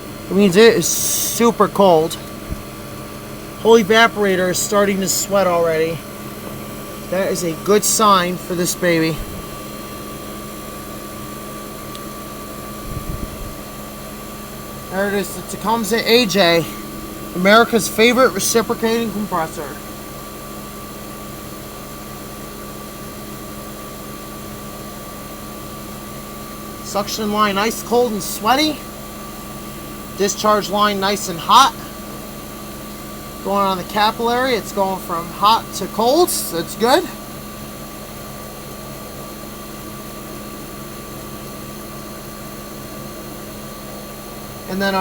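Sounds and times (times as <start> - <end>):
air conditioner humming: 0.0 - 45.0.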